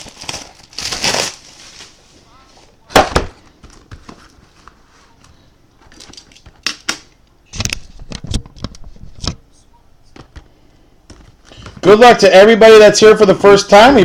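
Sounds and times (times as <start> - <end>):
boxes and packaging being moved: 0.0 - 6.6.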